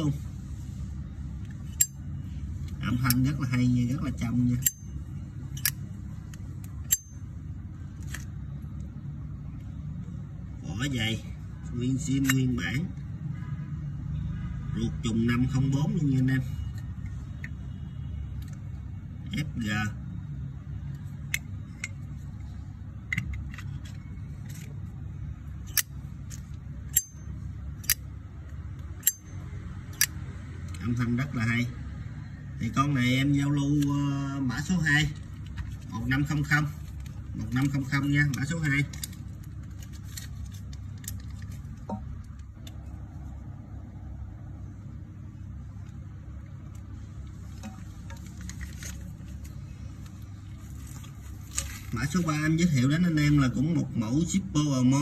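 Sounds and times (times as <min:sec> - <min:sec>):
steady low rumble: 0:31.9 - 0:54.9.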